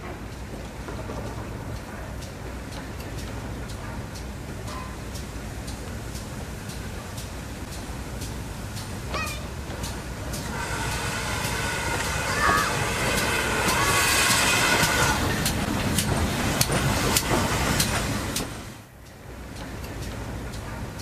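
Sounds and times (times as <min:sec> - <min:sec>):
train wheels clicking on rails: 0:00.0 - 0:21.0
train whine: 0:00.0 - 0:21.0.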